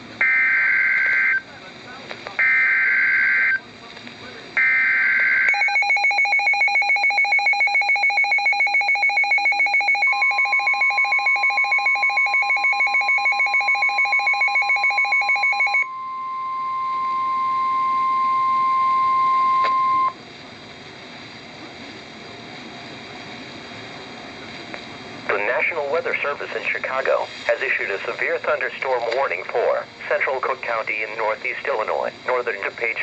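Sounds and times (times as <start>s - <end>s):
pulsing two-tone beep: 4.6s - 20.2s
faint hiss: 21.1s - 31.7s.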